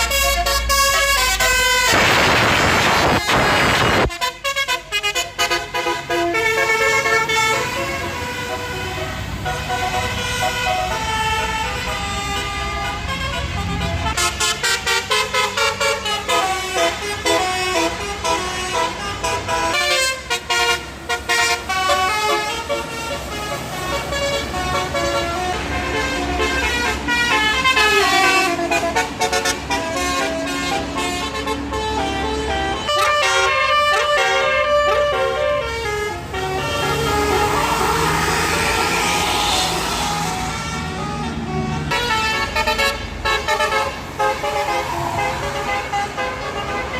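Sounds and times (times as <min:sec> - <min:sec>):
bus engines rumbling: 0:00.0 - 0:46.9
bus horns playing a melody: 0:00.0 - 0:46.9.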